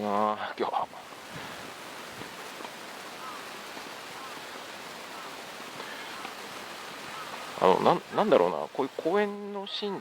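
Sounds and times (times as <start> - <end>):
wind hissing: 0.0 - 10.0
distant crow calls: 0.9 - 9.2.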